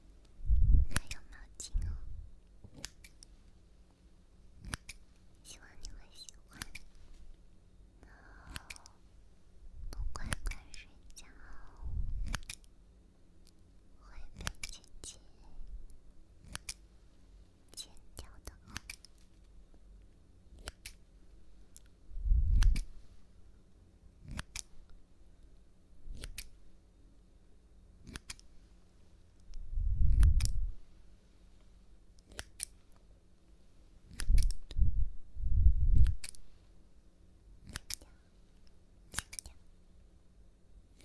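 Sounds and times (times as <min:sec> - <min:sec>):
dull low thumps: 0:00.4 - 0:01.0, 0:34.3 - 0:36.2
scissors snipping: 0:00.9 - 0:01.4, 0:02.7 - 0:03.3, 0:04.6 - 0:05.0, 0:05.8 - 0:07.3, 0:08.5 - 0:09.0, 0:10.0 - 0:10.7, 0:12.2 - 0:12.7, 0:14.3 - 0:15.0, 0:16.4 - 0:16.8, 0:18.4 - 0:19.3, 0:20.5 - 0:21.0, 0:22.5 - 0:22.9, 0:24.2 - 0:24.7, 0:26.1 - 0:26.6, 0:28.0 - 0:28.5, 0:29.5 - 0:30.7, 0:32.2 - 0:32.9, 0:34.1 - 0:34.8, 0:35.9 - 0:36.5, 0:37.6 - 0:39.6.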